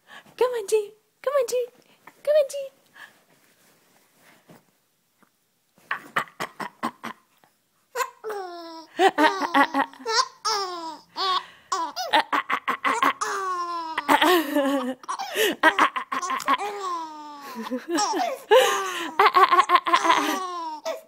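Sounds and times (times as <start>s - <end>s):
baby laughing: 8.0s - 21.0s.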